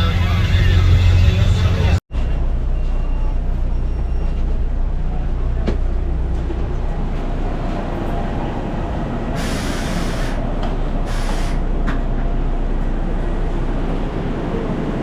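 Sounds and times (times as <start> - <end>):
airplane cabin low rumble: 0.0 - 15.0
short bursts of hiss: 11.1 - 11.6.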